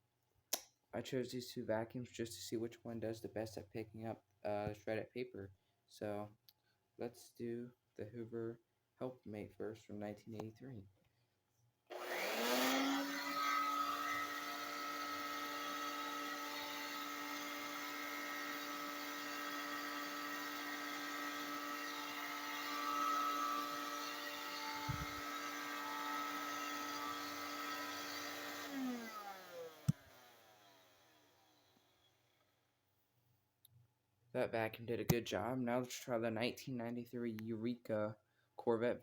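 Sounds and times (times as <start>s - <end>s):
handheld vacuum motor whine: 11.9s - 32.2s.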